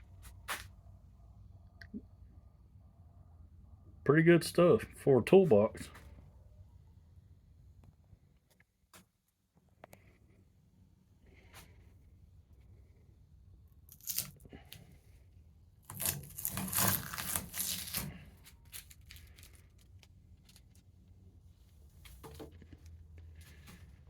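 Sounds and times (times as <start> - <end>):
tape peeling off metal: 13.9 - 14.4, 15.9 - 20.8
small crackles: 13.9 - 14.9, 15.8 - 24.0.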